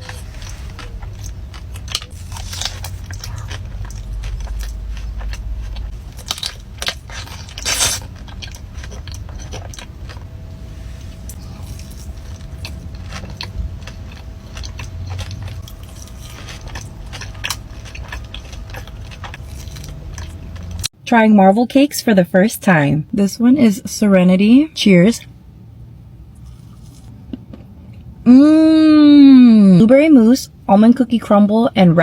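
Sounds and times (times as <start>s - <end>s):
pastry crunching while chewing: 0.0s - 10.3s, 11.1s - 20.9s, 26.4s - 27.8s.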